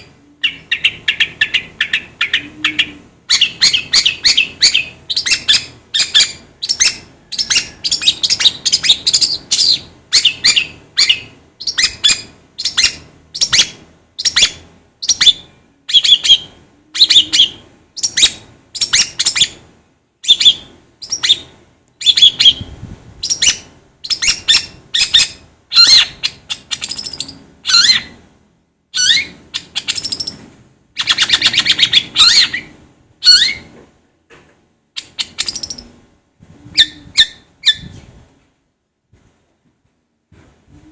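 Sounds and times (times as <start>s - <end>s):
bird chattering song: 0.0s - 19.6s, 20.2s - 28.2s, 29.0s - 30.4s, 31.0s - 33.7s, 35.0s - 35.9s.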